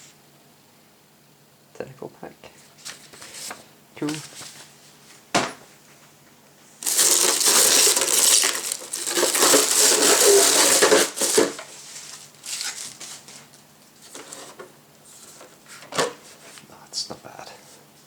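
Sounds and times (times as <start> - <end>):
packaging crackling and rustling: 6.8 - 13.5.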